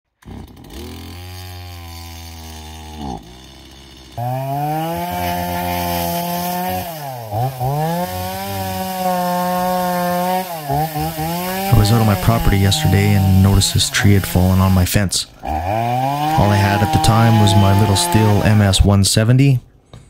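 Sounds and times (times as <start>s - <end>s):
chainsaw idling and revving: 0.1s - 19.0s.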